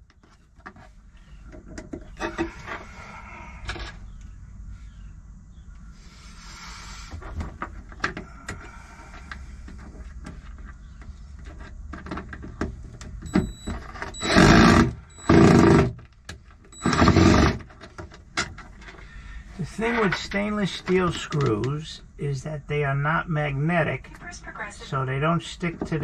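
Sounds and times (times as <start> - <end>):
parts clicking and knocking: 0.0 - 2.9, 7.1 - 19.1, 19.8 - 21.8
cordless drill driving screws: 14.2 - 15.9, 16.8 - 17.6.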